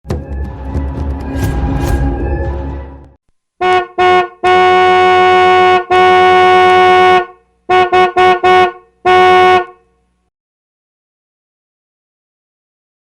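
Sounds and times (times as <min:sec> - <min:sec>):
car horn honking: 0:03.6 - 0:09.8.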